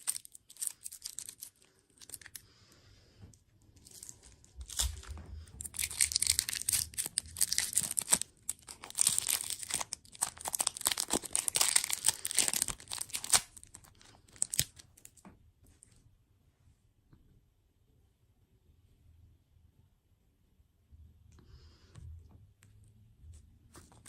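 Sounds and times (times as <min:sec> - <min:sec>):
packaging crinkling and tearing: 0:00.0 - 0:02.4, 0:03.8 - 0:15.2.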